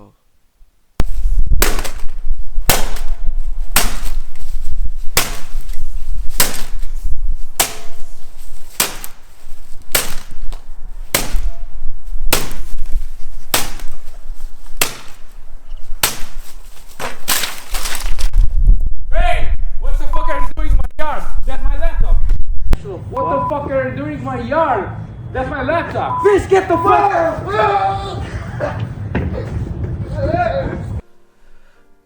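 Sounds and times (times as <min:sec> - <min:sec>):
steady low rumble: 0:01.0 - 0:17.0, 0:17.8 - 0:25.5
sharp strikes: 0:01.5 - 0:04.3, 0:05.1 - 0:05.6, 0:06.3 - 0:06.8, 0:07.6 - 0:09.3, 0:09.9 - 0:10.5, 0:11.1 - 0:12.8, 0:13.5 - 0:14.0, 0:14.8 - 0:15.3, 0:16.0 - 0:16.4.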